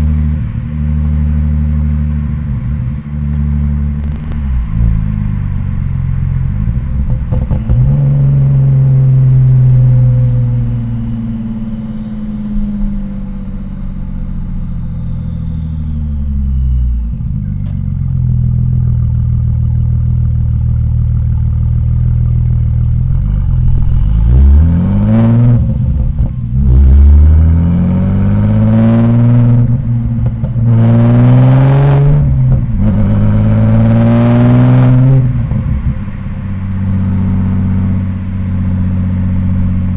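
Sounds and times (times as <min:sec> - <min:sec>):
car engine driving: 0:00.0 - 0:39.9
engine revving: 0:00.0 - 0:39.9
turbo whistle: 0:09.6 - 0:17.2, 0:34.8 - 0:38.1.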